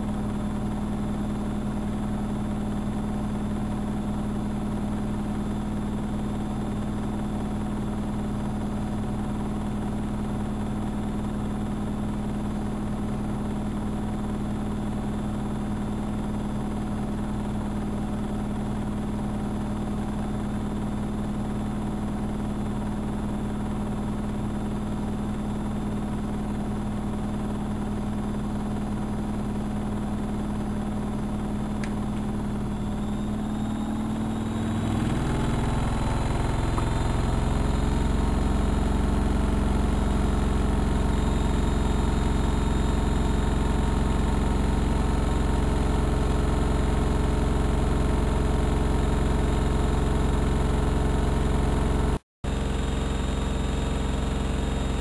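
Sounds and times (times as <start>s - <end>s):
washing machine humming: 27.4s - 55.0s.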